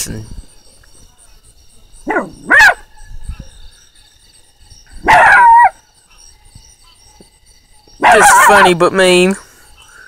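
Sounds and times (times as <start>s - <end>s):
faint frog chirping: 0.0s - 10.0s
puppy barking: 2.0s - 2.9s, 5.0s - 5.8s, 8.0s - 8.8s.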